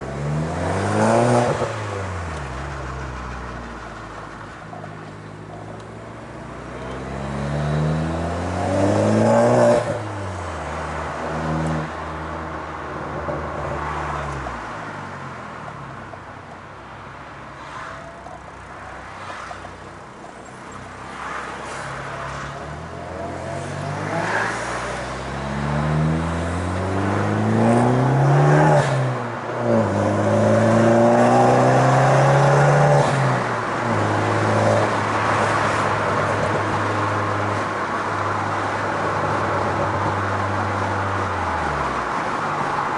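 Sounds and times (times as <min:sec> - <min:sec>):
car engine revving: 0:23.0 - 0:36.8.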